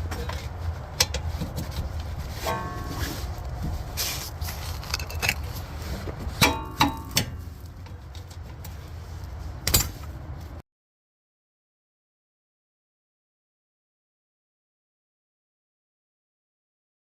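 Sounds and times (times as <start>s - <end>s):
low vehicle rumble: 0.0s - 10.6s.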